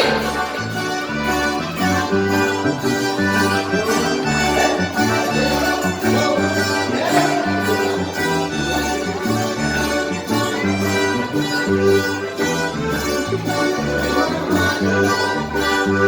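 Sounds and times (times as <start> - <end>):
folk dance music: 0.0 - 16.0.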